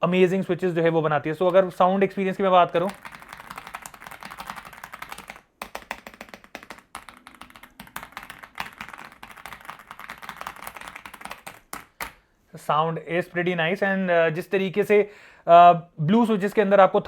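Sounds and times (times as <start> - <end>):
fast mechanical keyboard typing: 1.4 - 12.2.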